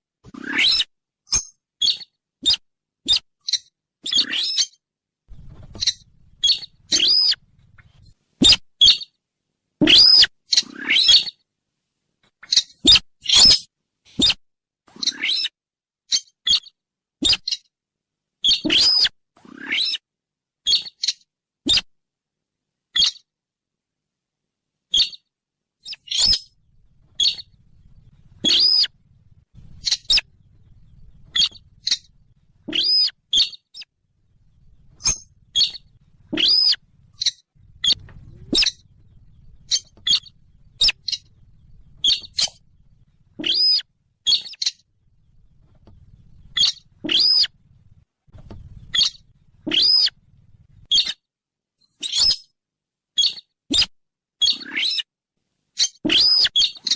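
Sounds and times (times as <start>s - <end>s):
short sharp bird calls: 0.4s - 9.1s, 9.8s - 11.4s, 12.4s - 14.4s, 25.8s - 28.9s, 29.6s - 33.9s, 34.5s - 44.8s, 46.0s - 47.5s, 48.6s - 50.2s, 55.8s - 56.9s
faint low hum: 5.3s - 8.4s, 26.5s - 50.9s.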